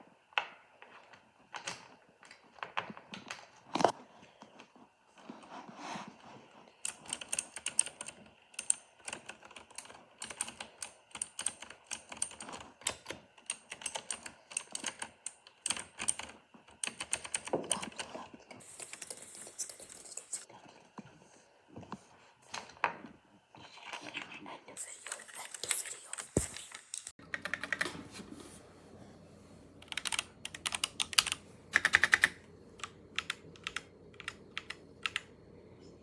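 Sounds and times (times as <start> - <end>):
mechanical keyboard typing: 6.8 - 19.8, 27.2 - 27.9, 29.8 - 35.3.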